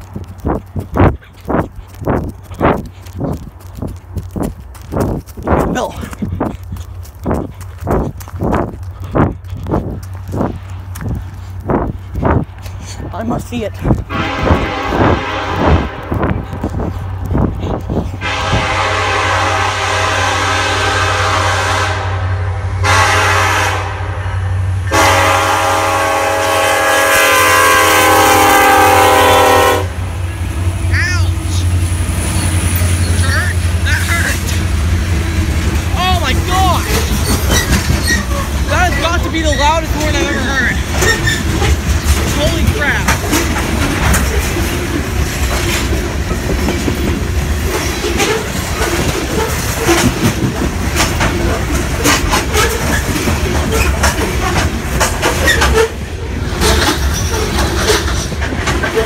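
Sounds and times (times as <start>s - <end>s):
low rumble of train: 0.0s - 59.0s
locomotive air horn blasts: 14.1s - 16.3s, 18.2s - 30.0s
wheels clacking over rail joints: 31.5s - 59.0s.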